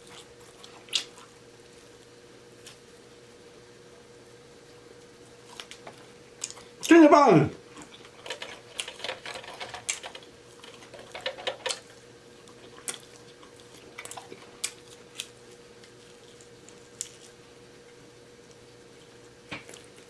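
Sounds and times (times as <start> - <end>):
chewing with wet smacks: 0.0 - 2.0, 5.4 - 6.9, 7.8 - 17.5.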